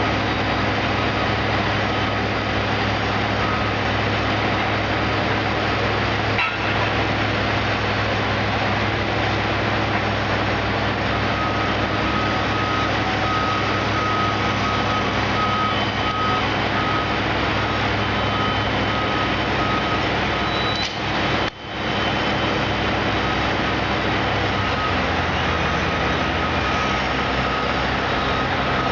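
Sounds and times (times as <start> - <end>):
truck engine running: 0.0 - 28.9
backup alarm beeping: 11.3 - 23.4, 24.2 - 28.9.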